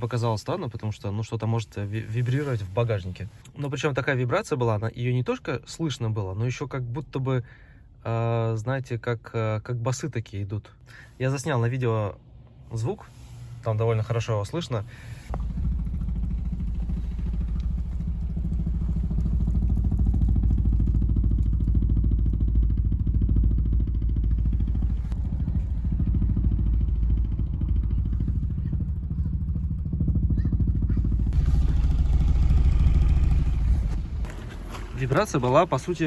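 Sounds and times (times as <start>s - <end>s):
car engine idling: 12.5s - 36.0s
rapid knocking vibration: 15.3s - 28.0s, 28.6s - 34.4s.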